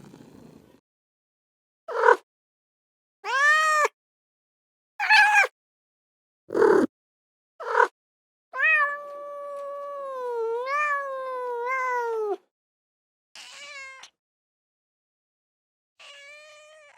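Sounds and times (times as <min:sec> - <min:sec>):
cat meowing: 0:03.3 - 0:03.9, 0:05.0 - 0:05.5, 0:06.5 - 0:06.9, 0:08.6 - 0:12.4
cat purring: 0:06.5 - 0:06.9.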